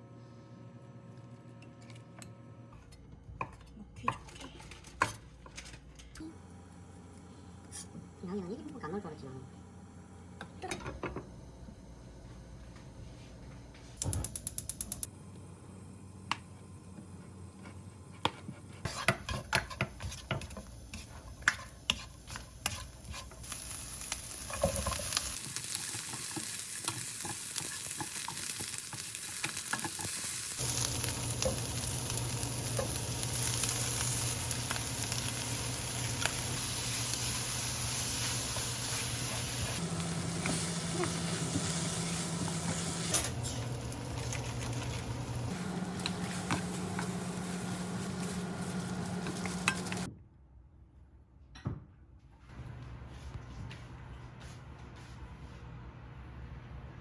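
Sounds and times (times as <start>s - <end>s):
frying sizzle: 19.5s - 50.1s.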